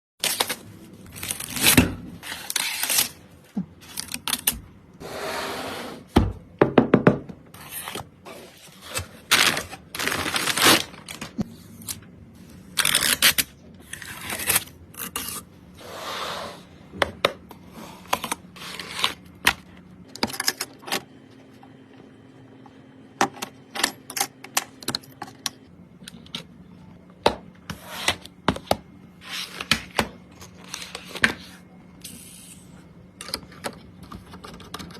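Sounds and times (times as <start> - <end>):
packaging rustling: 8.4 - 11.4.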